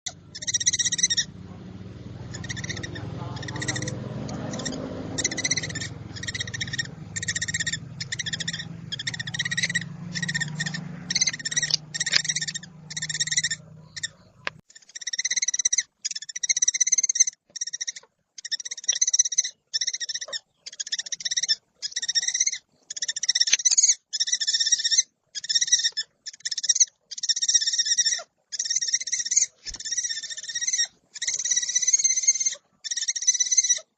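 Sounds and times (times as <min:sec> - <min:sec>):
low hum: 0:00.1 - 0:14.6
owl rasping calls: 0:00.1 - 0:33.9.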